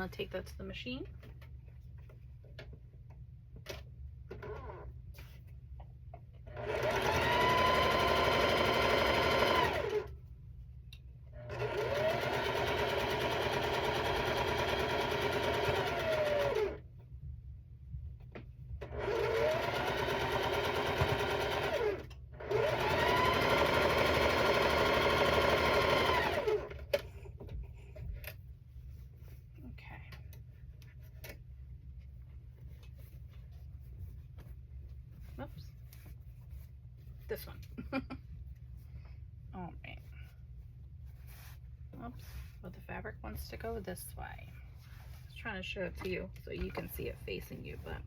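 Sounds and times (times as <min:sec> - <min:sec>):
electric sewing machine stitching: 0:06.5 - 0:10.1, 0:11.4 - 0:16.8, 0:18.8 - 0:27.0.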